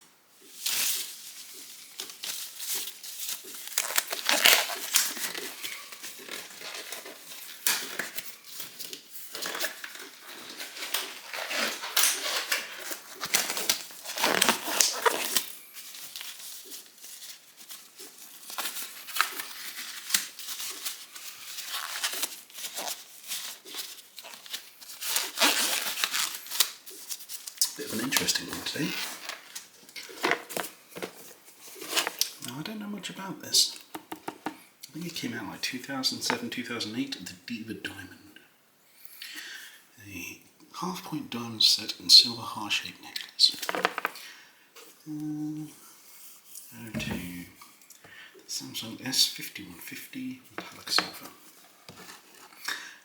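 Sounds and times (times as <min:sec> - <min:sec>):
packaging crinkling and rustling: 0:00.4 - 0:32.4.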